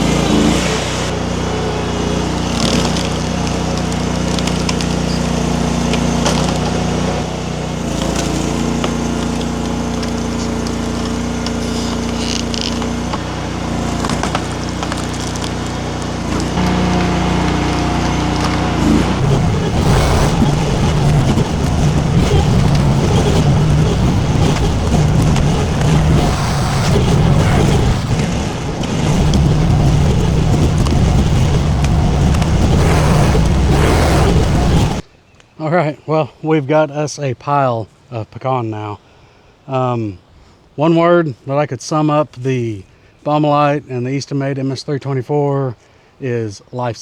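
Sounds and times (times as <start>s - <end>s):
skid steer engine running: 0.0s - 35.0s.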